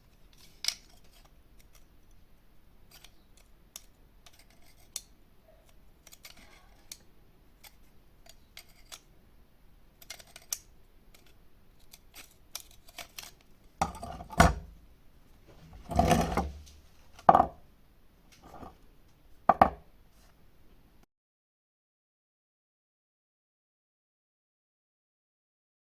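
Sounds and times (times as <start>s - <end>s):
hard objects clanking and rattling: 13.8s - 14.6s, 15.7s - 17.6s, 19.5s - 19.8s.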